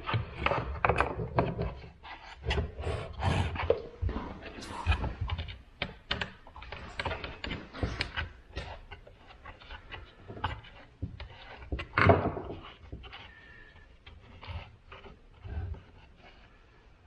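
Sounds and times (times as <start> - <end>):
plastic and metal clicks and knocks: 0.0 - 1.9, 4.9 - 13.4.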